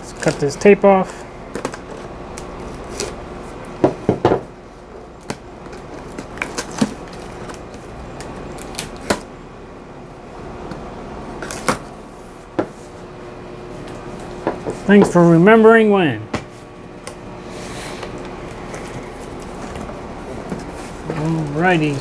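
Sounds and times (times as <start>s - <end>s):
knife cutting packing tape: 1.6s - 3.2s, 8.4s - 9.2s
cardboard flaps and packing rustling: 18.0s - 22.0s.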